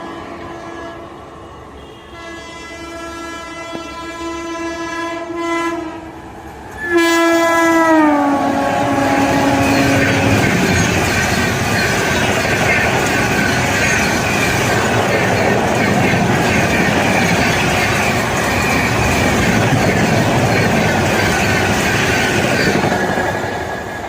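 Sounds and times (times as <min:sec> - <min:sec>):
locomotive multi-tone horn: 0:00.0 - 0:06.1, 0:06.8 - 0:11.6
train coaches rushing and clattering: 0:02.6 - 0:24.0.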